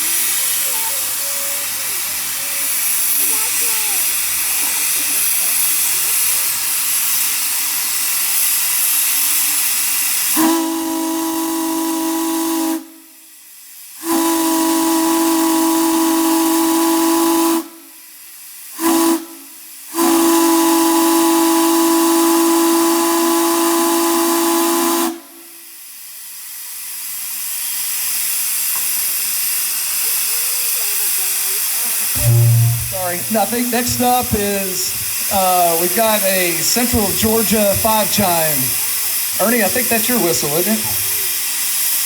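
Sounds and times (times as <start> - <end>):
steam hissing: 0.0 - 42.0
steam whistle blasts: 10.3 - 13.3, 14.0 - 17.9, 18.8 - 25.4, 32.2 - 41.5.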